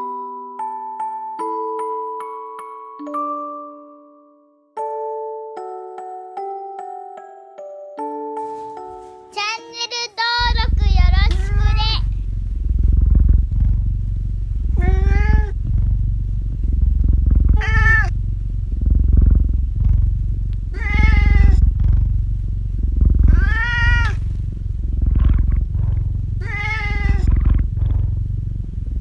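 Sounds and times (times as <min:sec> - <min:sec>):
cat meowing: 0:10.4 - 0:12.1, 0:14.7 - 0:15.6, 0:17.6 - 0:18.1, 0:20.7 - 0:21.7, 0:23.2 - 0:24.2, 0:26.4 - 0:27.4
cat purring: 0:10.4 - 0:29.0.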